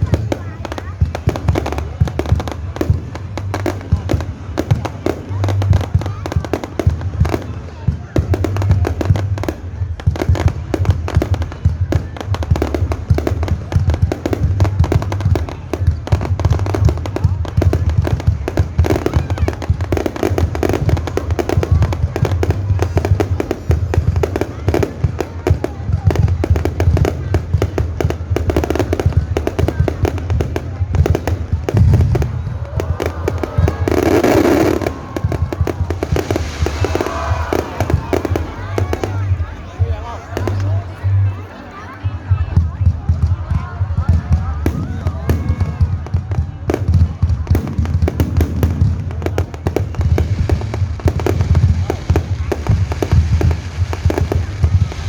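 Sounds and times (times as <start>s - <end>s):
fireworks deep booms: 0.0s - 41.3s, 42.2s - 55.0s
fireworks bangs and crackles: 0.0s - 55.0s
hissing firework burst: 31.4s - 39.5s, 50.0s - 55.0s.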